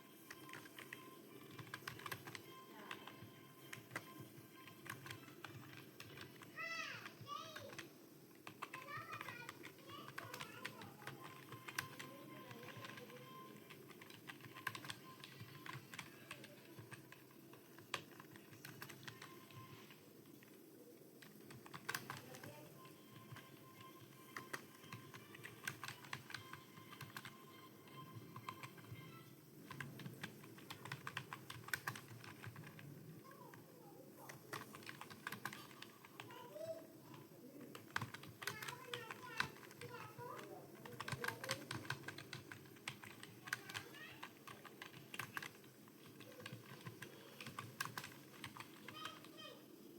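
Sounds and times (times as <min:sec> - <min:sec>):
computer keyboard typing: 0:00.0 - 0:49.6.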